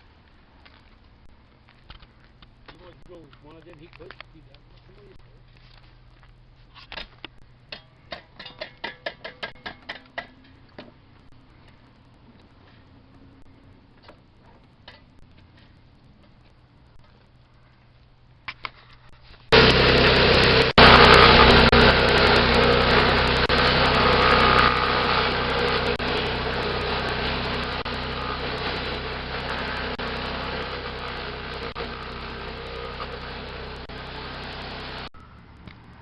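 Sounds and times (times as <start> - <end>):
stump grinder grinding: 19.5 - 35.1.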